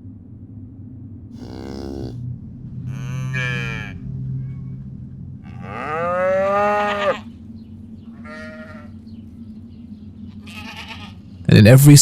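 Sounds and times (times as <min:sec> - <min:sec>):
farm animal calling: 0:01.4 - 0:02.2, 0:02.9 - 0:04.0, 0:05.5 - 0:07.3.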